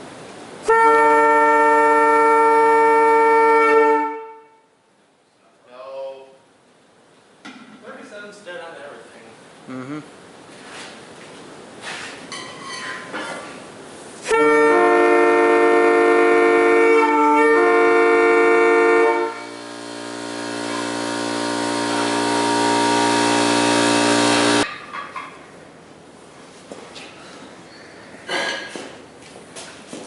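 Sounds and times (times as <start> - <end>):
locomotive air horn: 0.6 - 4.7, 14.2 - 24.7.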